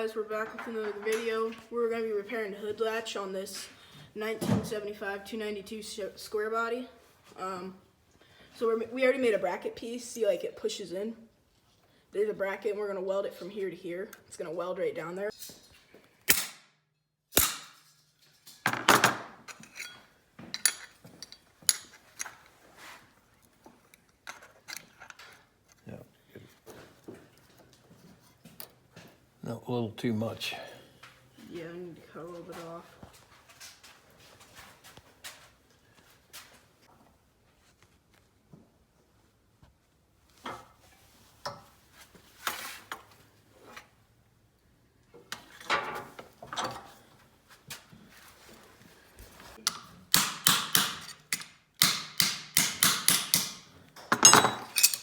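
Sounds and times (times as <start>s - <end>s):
metal bracket clinking and knocking: 54.0s - 55.0s.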